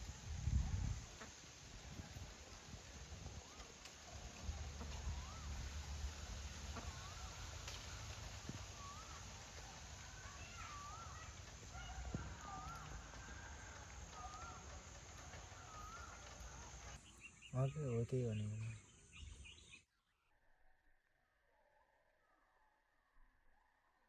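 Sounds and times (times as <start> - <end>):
steady rushing hiss: 0.0 - 19.6
bird calling with whistled notes: 2.6 - 20.8.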